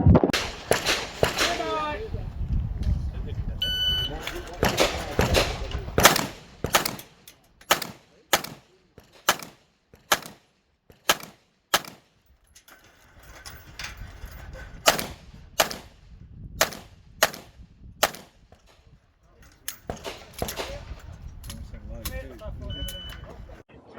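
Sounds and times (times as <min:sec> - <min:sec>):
handgun shots: 0:00.4 - 0:01.9, 0:04.2 - 0:12.0.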